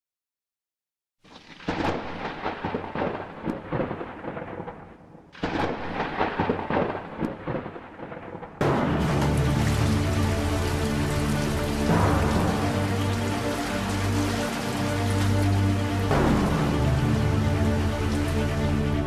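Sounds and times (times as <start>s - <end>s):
steady rain: 1.3s - 19.0s
thunder peals: 1.7s - 19.0s
sustained synth chord: 8.8s - 19.0s.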